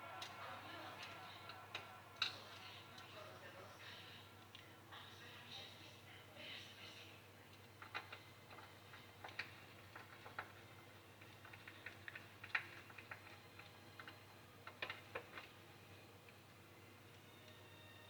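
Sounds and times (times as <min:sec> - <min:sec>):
small parts clicking and tapping: 0:07.5 - 0:15.6.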